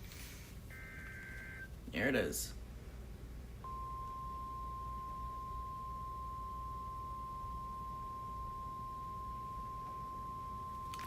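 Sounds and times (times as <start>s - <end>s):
weather radio alarm tone: 0.7s - 1.7s.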